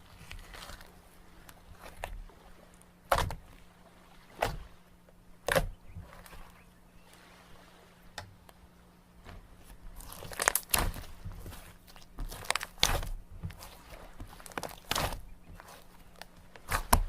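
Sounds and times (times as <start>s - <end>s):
slime being handled: 10.0s - 17.0s.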